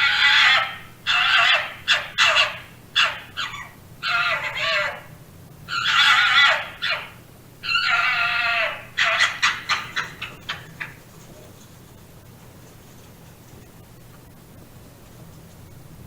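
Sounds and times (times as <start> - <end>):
fox yelping: 0.0 - 5.1, 5.7 - 11.4
fox screaming: 0.0 - 11.0.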